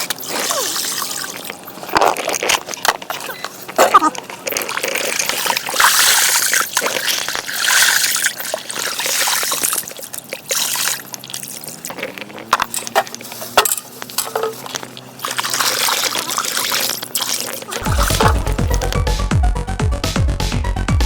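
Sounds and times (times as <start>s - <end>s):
water splashing and trickling: 0.0s - 19.0s
background music: 17.8s - 21.0s.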